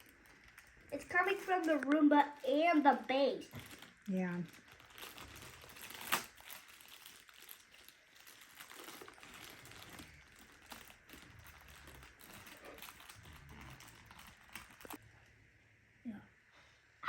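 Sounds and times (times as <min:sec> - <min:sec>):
plastic clicks and rustling: 0:03.5 - 0:15.0.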